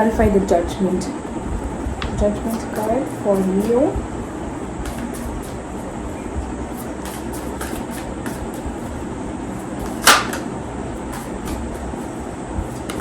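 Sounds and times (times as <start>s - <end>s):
steady background hum: 0.0s - 13.0s
cards rustling: 11.0s - 13.0s.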